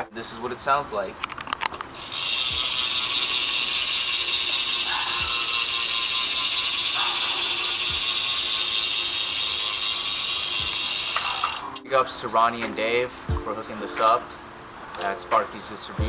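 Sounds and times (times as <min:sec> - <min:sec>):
bicycle hub ratcheting buzz: 0:01.9 - 0:11.9.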